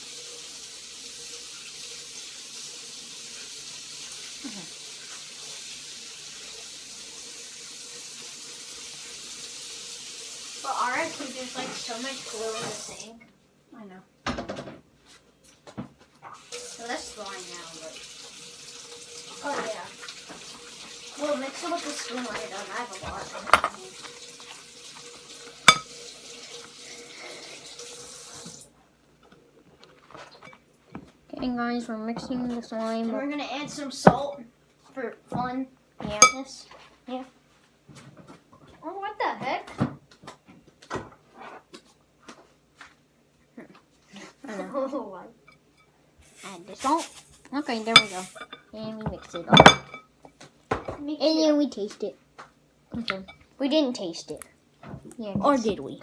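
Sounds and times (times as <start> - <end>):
water running from sink tap: 0.0 - 13.1, 16.3 - 28.7, 46.3 - 50.0.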